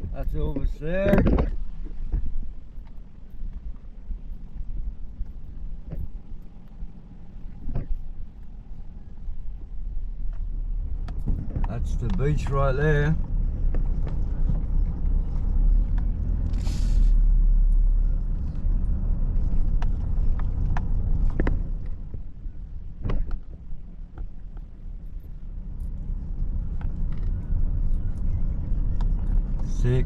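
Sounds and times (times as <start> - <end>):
car engine and road rumble: 0.0 - 30.0
brief hiss: 16.5 - 17.2.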